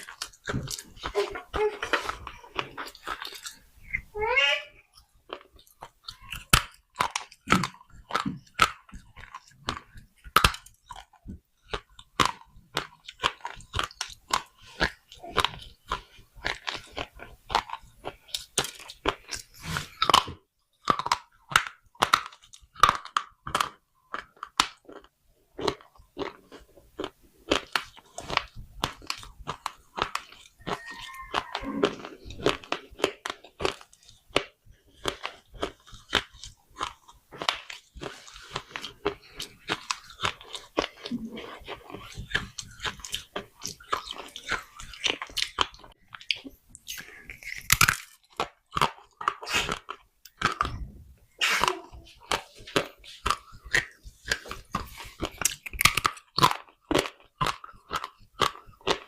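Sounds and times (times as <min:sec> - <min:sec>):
brittle crunching while chewing: 0:00.0 - 0:04.0, 0:05.0 - 0:59.0.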